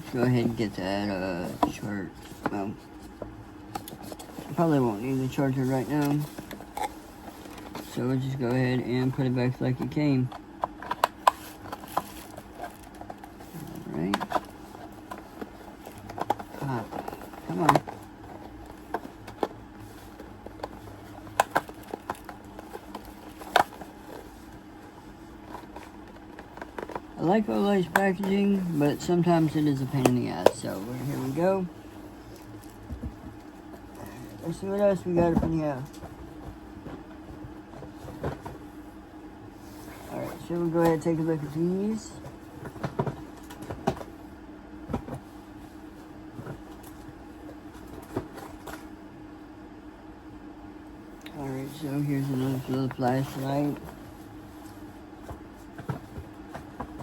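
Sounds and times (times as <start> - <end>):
steady low hum: 0.0 - 57.0
packaging clicks and knocks: 20.3 - 24.3.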